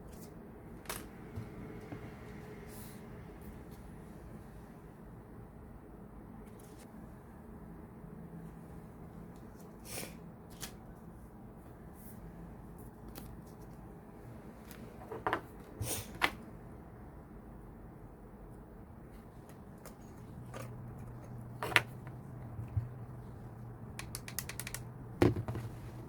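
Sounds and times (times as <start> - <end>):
sharp plastic clicks: 23.9 - 25.0.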